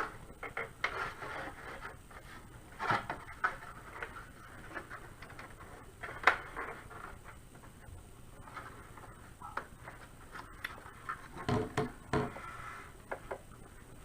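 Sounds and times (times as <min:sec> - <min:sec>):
plastic clicks and rubbing: 0:00.0 - 0:07.8.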